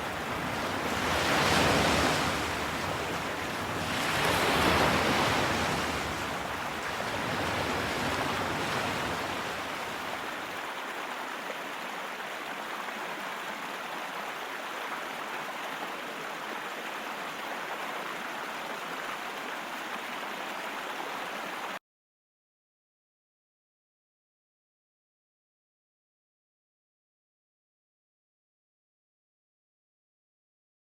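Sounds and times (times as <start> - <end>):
ocean waves on shore: 0.0 - 21.8.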